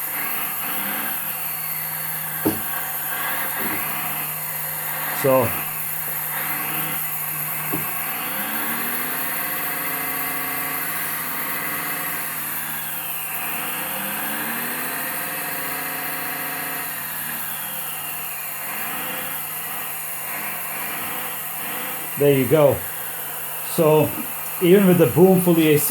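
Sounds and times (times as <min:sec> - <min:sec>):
hydraulic pump hum: 0:00.0 - 0:12.1, 0:18.4 - 0:25.9
motor straining: 0:00.0 - 0:25.9.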